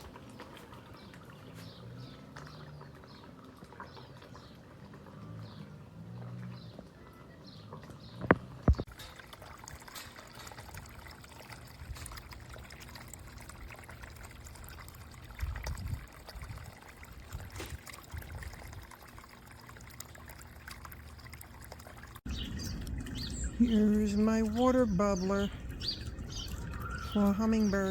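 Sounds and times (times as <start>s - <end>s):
fountain water spraying and trickling: 0.0s - 5.0s, 8.8s - 27.9s
low rumble: 22.3s - 27.2s.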